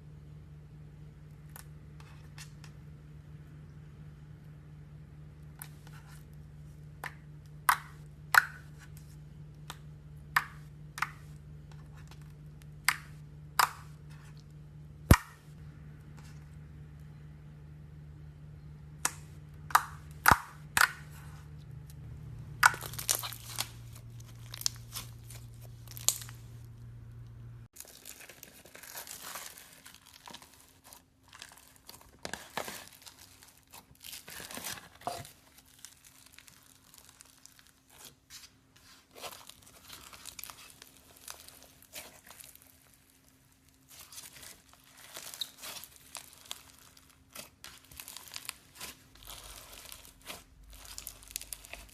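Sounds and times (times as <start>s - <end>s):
slime popping and squishing: 22.4s - 26.8s, 39.2s - 51.9s.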